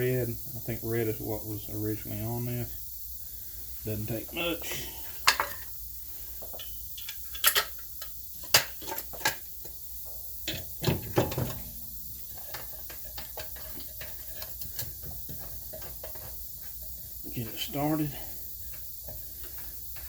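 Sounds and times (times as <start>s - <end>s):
steady hiss: 0.0s - 20.0s
hand tools clicking and tapping: 10.4s - 17.0s, 18.6s - 20.0s.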